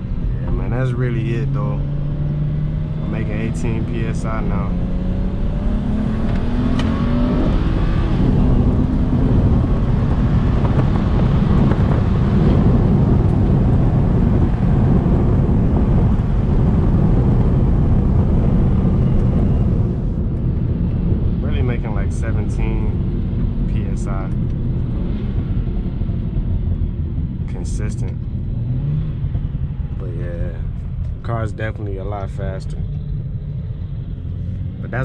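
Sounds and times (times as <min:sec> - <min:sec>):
car engine accelerating hard: 0:00.0 - 0:35.0
road noise: 0:00.0 - 0:35.0.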